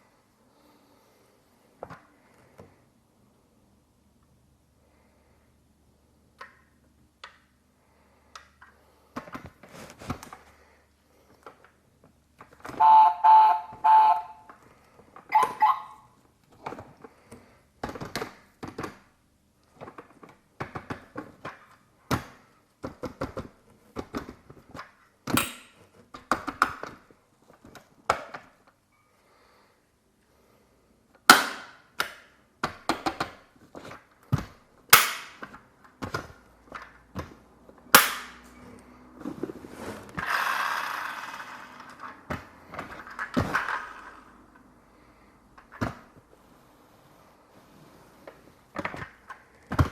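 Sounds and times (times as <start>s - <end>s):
short pulsing beep: 12.8s - 14.4s
plastic parts clicking and snapping: 16.4s - 28.8s, 31.1s - 38.5s, 41.4s - 44.7s.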